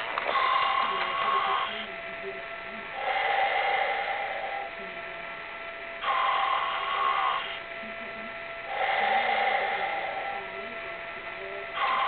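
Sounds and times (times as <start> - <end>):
toy frog snoring: 0.3 - 1.9, 2.9 - 4.6, 6.0 - 7.6, 8.7 - 10.4, 11.8 - 12.0.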